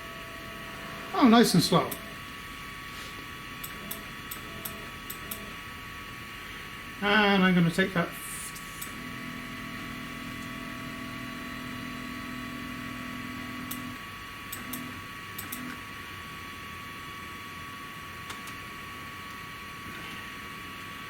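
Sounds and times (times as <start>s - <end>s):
stepper motors humming: 7.5s - 15.8s.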